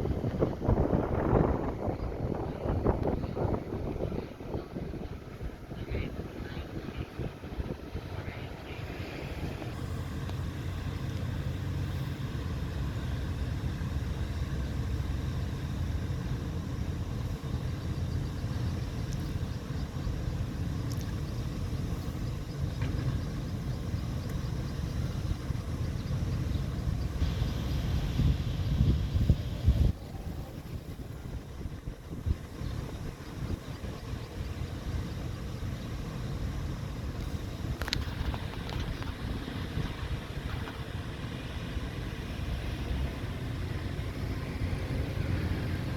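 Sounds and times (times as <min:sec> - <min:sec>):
diesel engine running: 0:00.0 - 0:45.9.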